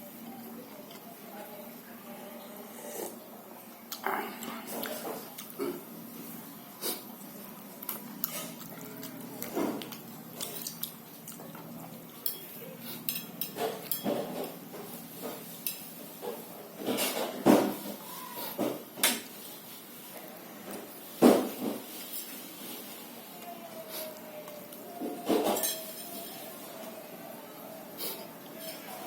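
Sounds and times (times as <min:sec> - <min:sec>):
dishware clicking and clinking: 0:12.2 - 0:14.6, 0:25.2 - 0:26.5.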